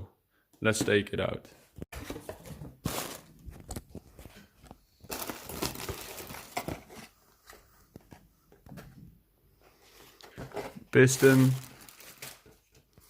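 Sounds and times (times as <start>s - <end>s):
packaging crinkling and rustling: 2.0s - 7.1s, 11.0s - 12.8s.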